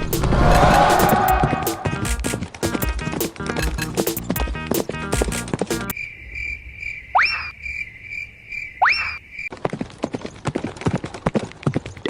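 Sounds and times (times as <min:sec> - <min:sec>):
rising whistles: 0:00.0 - 0:02.2
cartoon cricket chirping: 0:05.9 - 0:09.5.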